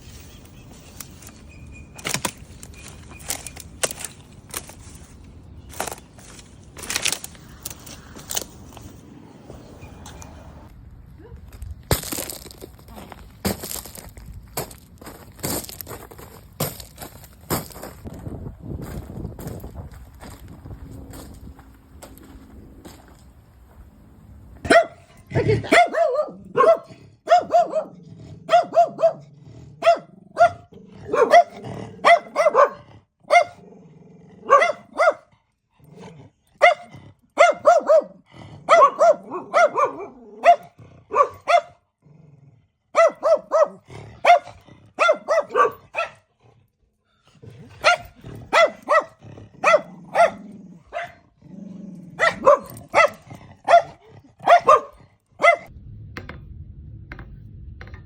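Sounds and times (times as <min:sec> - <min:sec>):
dog barking high: 0:24.6 - 0:33.6, 0:34.4 - 0:35.3, 0:36.6 - 0:41.8, 0:42.9 - 0:46.3, 0:47.8 - 0:51.2, 0:52.2 - 0:55.7.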